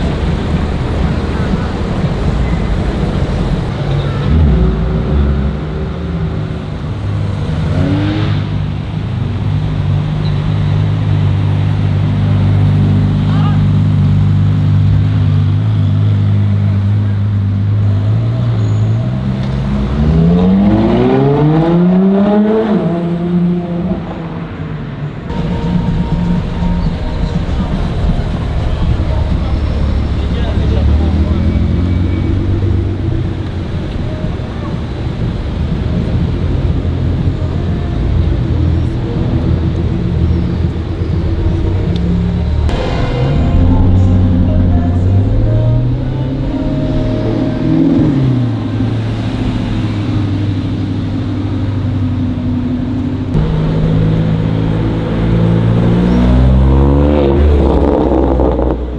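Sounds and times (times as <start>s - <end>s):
sports car engine accelerating: 0.0s - 24.7s, 25.3s - 58.9s.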